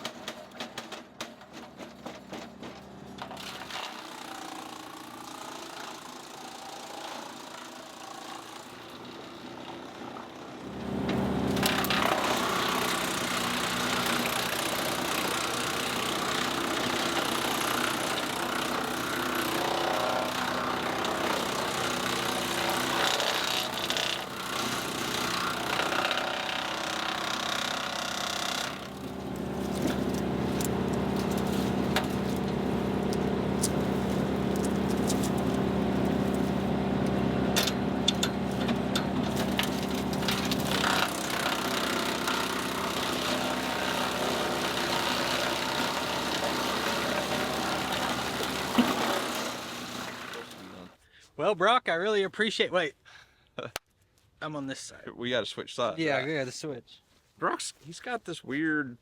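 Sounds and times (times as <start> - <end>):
wood chipper grinding branches: 0.0 - 51.0
engine droning: 28.9 - 41.6.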